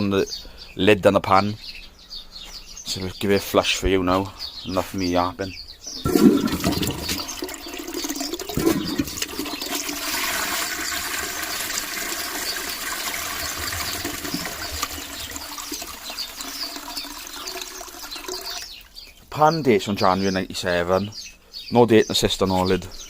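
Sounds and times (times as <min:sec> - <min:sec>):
toilet flushing: 0:06.0 - 0:18.7.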